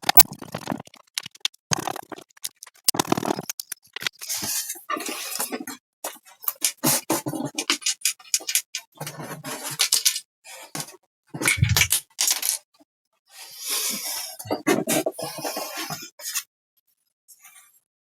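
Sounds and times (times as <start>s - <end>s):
hands handling plastic case and screws: 11.5s - 12.4s.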